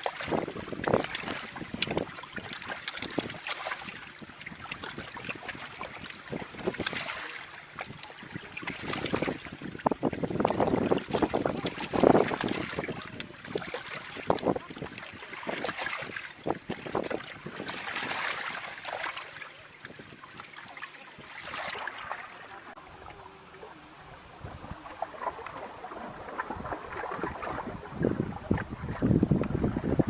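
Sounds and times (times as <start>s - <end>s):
wind gusting over microphone: 0.0s - 7.1s, 7.9s - 18.6s, 24.0s - 30.0s
water lapping: 0.0s - 30.0s.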